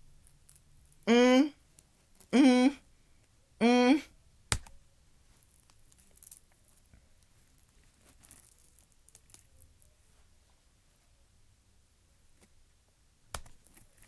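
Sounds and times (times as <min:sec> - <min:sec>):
faint rustling: 0:05.2 - 0:11.1.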